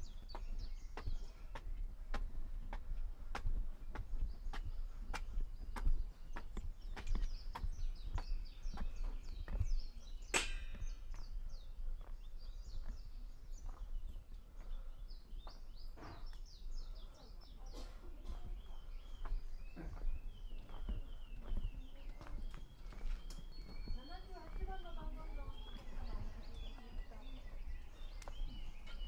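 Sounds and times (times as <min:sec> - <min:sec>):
footsteps on a path: 0:00.0 - 0:29.0
small birds chirping: 0:00.0 - 0:29.0
sharp loud knock: 0:10.3 - 0:11.0.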